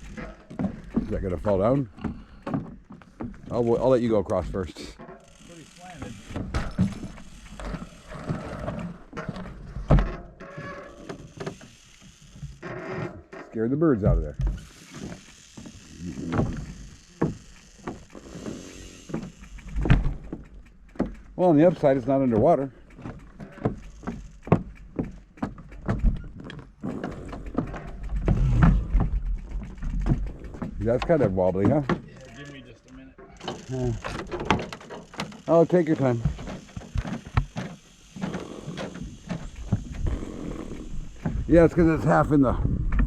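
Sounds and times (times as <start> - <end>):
footsteps on wooden boardwalk: 0.0 - 5.4, 6.0 - 32.5, 33.1 - 43.0
wooden planks creaking: 0.0 - 43.0
low rumble: 26.8 - 31.1.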